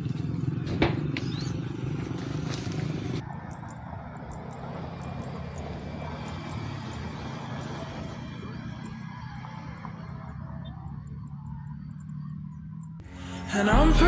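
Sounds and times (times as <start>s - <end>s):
low motor rumble: 9.2s - 14.0s.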